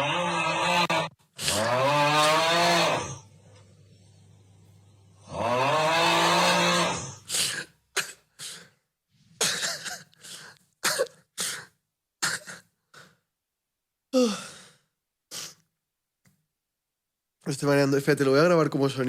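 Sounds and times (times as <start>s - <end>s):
man snoring: 0.0s - 3.5s, 5.1s - 7.6s.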